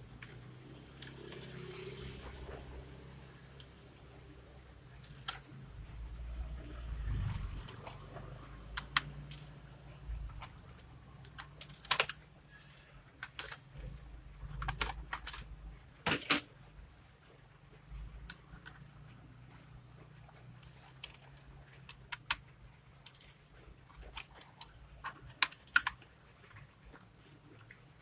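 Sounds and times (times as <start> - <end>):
laptop parts clicking and clattering: 0.2 - 1.7, 5.0 - 5.6, 7.3 - 9.6, 10.2 - 13.8, 14.4 - 16.6, 20.3 - 28.0.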